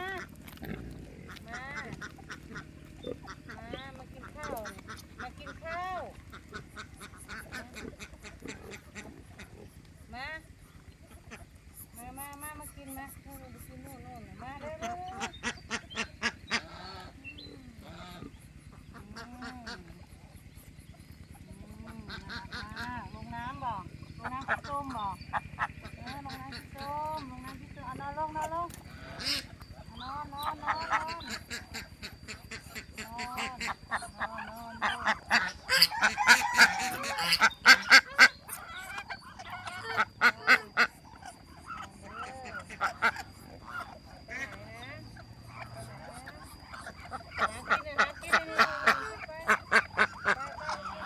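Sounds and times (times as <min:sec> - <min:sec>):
ducks quacking: 0:00.0 - 0:51.0
geese honking: 0:00.0 - 0:51.0
steady low hum: 0:00.0 - 0:51.0.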